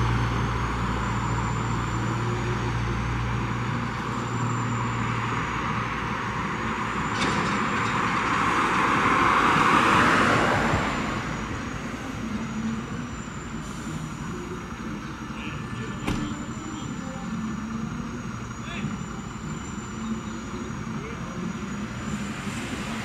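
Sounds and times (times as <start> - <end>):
motor vehicle driving past: 21.7 - 23.0.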